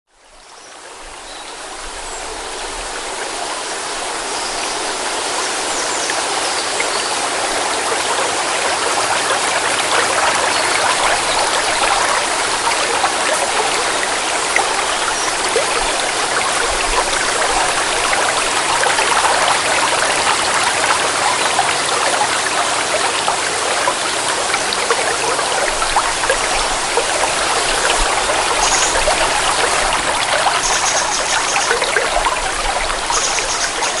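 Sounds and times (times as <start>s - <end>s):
forest stream flowing: 0.1s - 34.0s.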